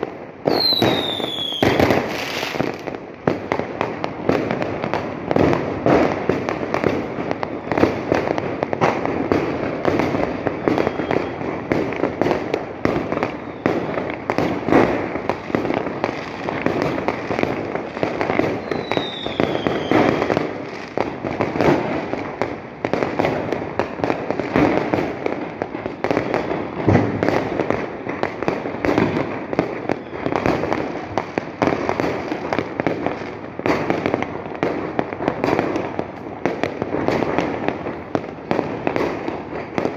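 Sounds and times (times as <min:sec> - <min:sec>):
falling firework whistle: 0:00.0 - 0:02.8, 0:10.0 - 0:17.2, 0:18.1 - 0:20.7, 0:25.9 - 0:27.5, 0:28.8 - 0:30.8
fireworks bangs and crackling: 0:00.0 - 0:39.9.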